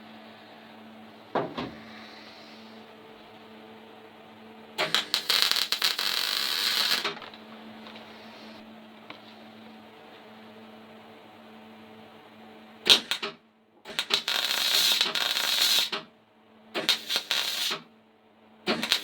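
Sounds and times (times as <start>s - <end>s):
steady hum: 0.0s - 19.0s
welder crackling hiss: 4.8s - 7.3s, 12.9s - 16.1s, 16.8s - 17.9s, 18.7s - 19.0s.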